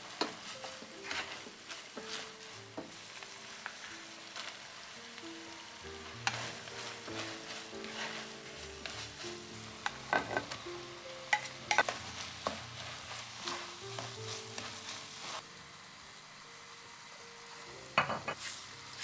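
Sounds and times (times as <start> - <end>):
metal spatula scraping a pan: 0.0 - 3.8, 6.2 - 10.6, 11.3 - 15.4
meat sizzling in a pan: 0.0 - 19.0.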